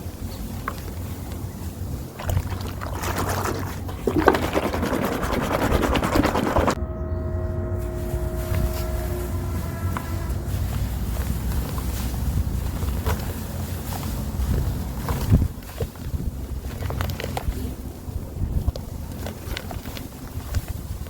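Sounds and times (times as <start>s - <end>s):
steady hum with tones: 2.1s - 11.8s
block crumbling in foamy water: 2.2s - 6.8s.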